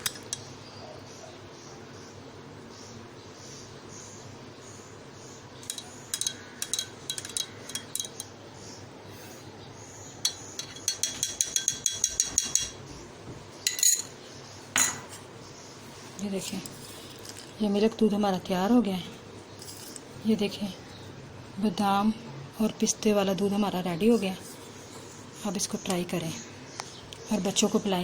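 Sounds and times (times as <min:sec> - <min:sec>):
spoon clinking against glass: 0:00.0 - 0:00.5, 0:05.6 - 0:08.3, 0:10.2 - 0:12.8, 0:13.7 - 0:14.2.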